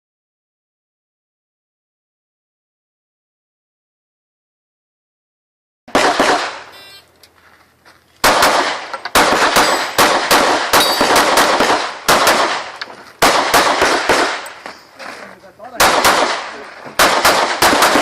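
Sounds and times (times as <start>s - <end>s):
pistol shots ringing: 5.9s - 6.9s, 8.2s - 14.6s, 15.7s - 18.0s.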